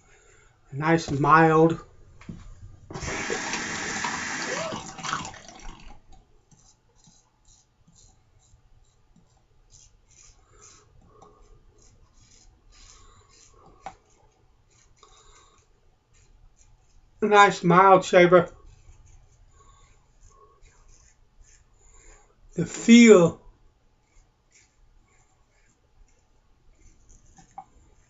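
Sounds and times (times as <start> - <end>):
faint scraping strokes: 6.5 - 17.2, 18.5 - 22.4, 24.0 - 28.0.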